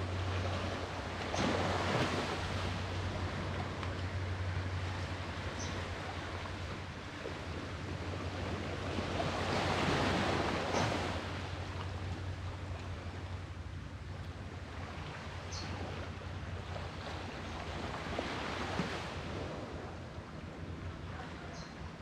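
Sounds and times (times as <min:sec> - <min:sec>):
sea waves breaking on shore: 0:00.0 - 0:22.0.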